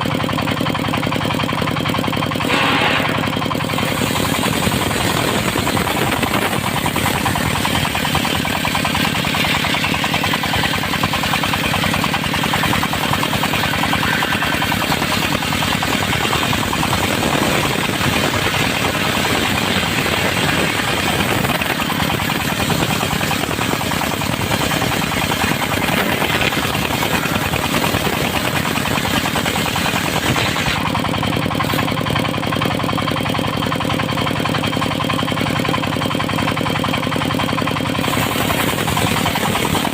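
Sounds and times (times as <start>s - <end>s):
sawmill engine chugging: 0.0s - 39.9s
saw blade cutting wood: 2.4s - 31.0s, 31.6s - 32.1s, 38.1s - 39.9s.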